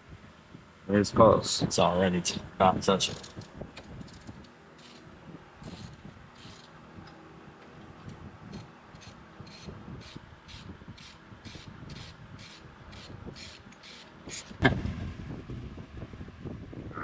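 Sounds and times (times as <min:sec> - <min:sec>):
ratchet wrench clicking: 0:03.1 - 0:05.0, 0:05.6 - 0:06.7, 0:09.0 - 0:14.6.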